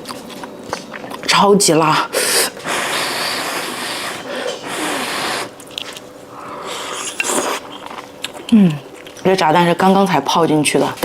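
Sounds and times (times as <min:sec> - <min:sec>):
person slurping noodles: 0:02.0 - 0:05.6, 0:06.3 - 0:07.9.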